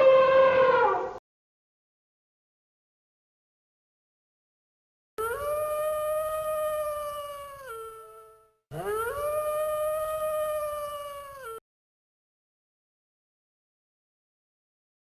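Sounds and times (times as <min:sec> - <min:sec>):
dog howling: 0:05.2 - 0:11.6.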